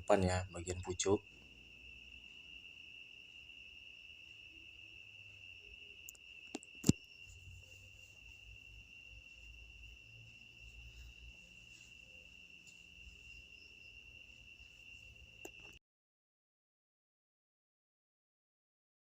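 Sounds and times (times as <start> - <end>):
crickets trilling: 0.0 - 15.8.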